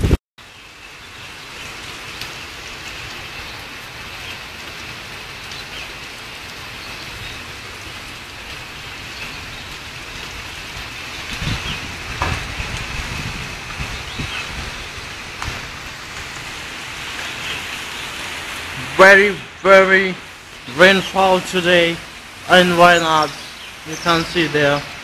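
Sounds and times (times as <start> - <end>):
heavy rain: 0.0 - 25.0
rain drop ticks: 1.6 - 25.0
low thumps: 11.4 - 16.6.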